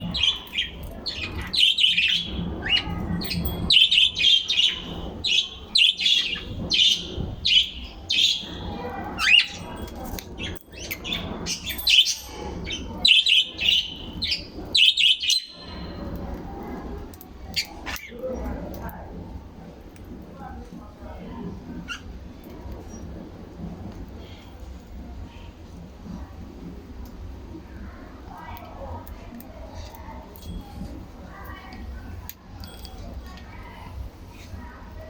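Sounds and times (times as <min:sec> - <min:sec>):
birds chirping: 0:00.0 - 0:16.4
low background rumble: 0:00.0 - 0:35.0.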